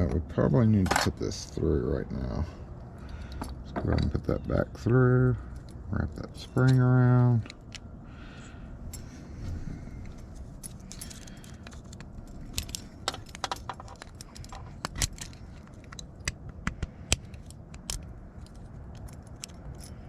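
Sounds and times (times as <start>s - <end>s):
metal door handle parts clicking: 10.6s - 20.0s.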